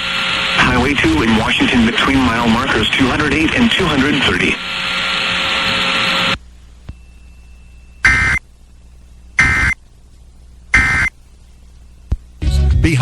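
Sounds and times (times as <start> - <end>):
radio hiss: 0.0 - 6.9, 8.0 - 8.5, 9.4 - 11.3
buzzing digital tone bursts: 8.0 - 8.4, 9.4 - 9.8, 10.7 - 11.1.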